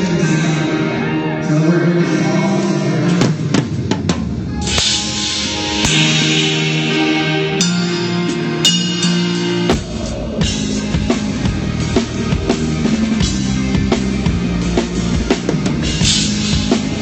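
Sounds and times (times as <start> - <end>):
drums and bass beat: 9.7 - 10.3.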